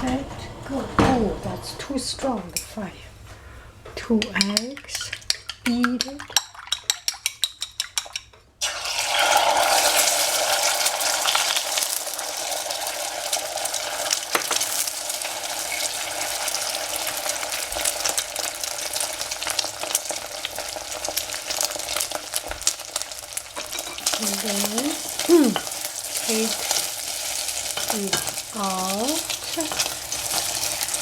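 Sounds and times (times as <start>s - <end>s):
eggs sizzling in a pan: 3.5s - 31.0s
utensil scraping a pan: 23.6s - 31.0s.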